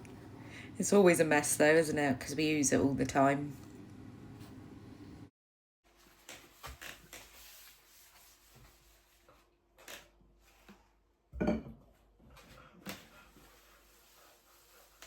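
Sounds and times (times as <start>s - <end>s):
items set down on worktop: 11.4s - 11.8s.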